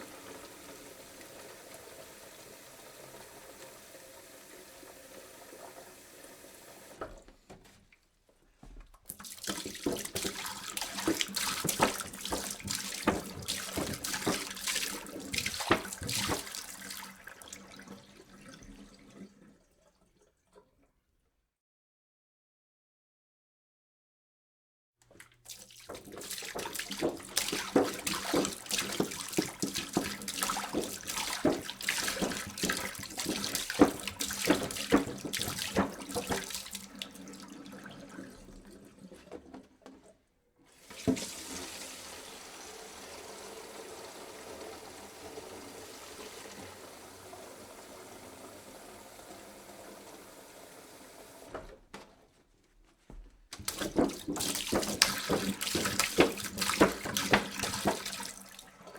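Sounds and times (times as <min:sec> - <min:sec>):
water pouring into jug: 0:09.1 - 0:20.7, 0:25.1 - 0:40.1, 0:53.6 - 0:58.9.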